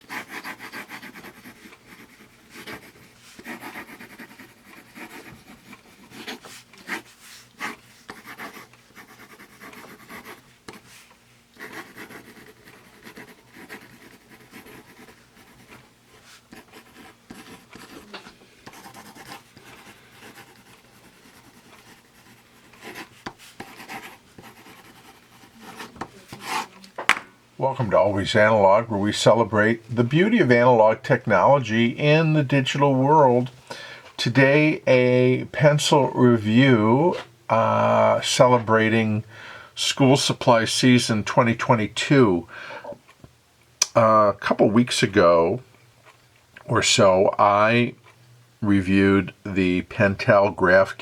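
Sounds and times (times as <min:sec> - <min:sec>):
pencil writing on paper: 0:00.0 - 0:10.8, 0:11.6 - 0:15.8, 0:16.5 - 0:26.7.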